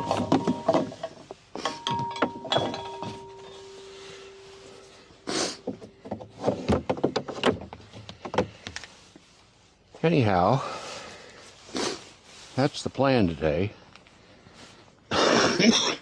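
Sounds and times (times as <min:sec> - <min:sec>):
boat gear knocking and clinking: 0:00.0 - 0:03.8, 0:05.6 - 0:08.6
steady tone: 0:01.8 - 0:05.2.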